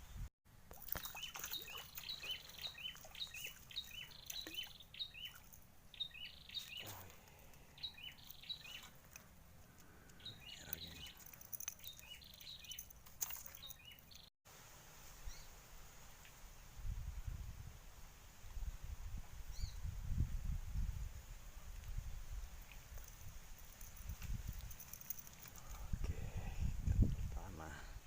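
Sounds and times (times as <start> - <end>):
small bird chirping: 0.9 - 9.2, 9.8 - 14.3.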